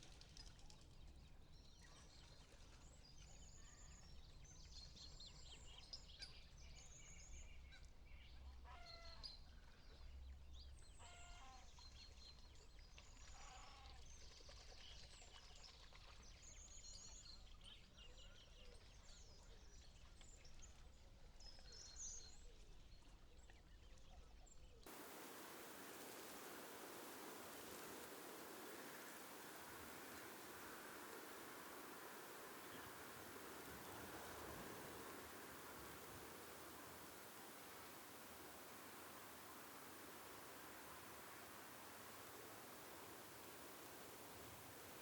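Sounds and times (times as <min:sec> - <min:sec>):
low falling bird calls: 0:24.9 - 0:45.0
small birds chirping and trilling: 0:24.9 - 0:45.0.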